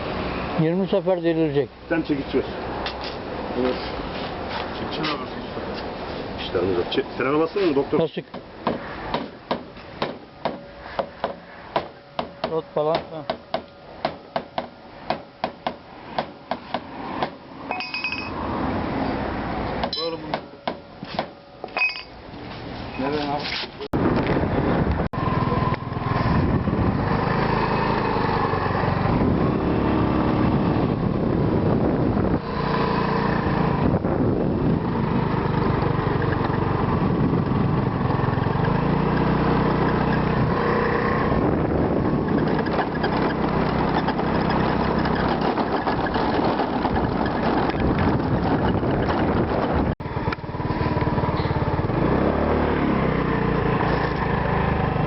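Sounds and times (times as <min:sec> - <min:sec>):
vehicle engine running: 0:25.2 - 0:55.0.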